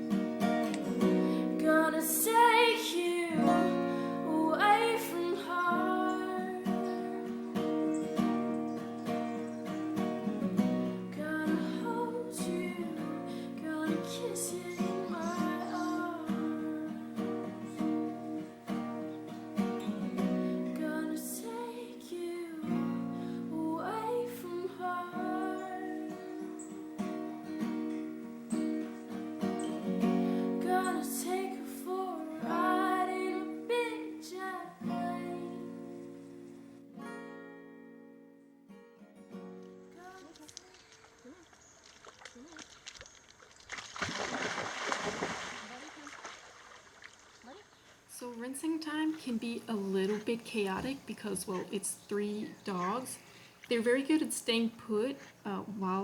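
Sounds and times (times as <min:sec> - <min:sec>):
strummed acoustic guitar: 0:00.0 - 0:40.4, 0:48.1 - 0:56.0
woman singing: 0:01.0 - 0:07.9, 0:10.9 - 0:18.6, 0:20.5 - 0:27.1, 0:30.3 - 0:36.2, 0:48.1 - 0:56.0.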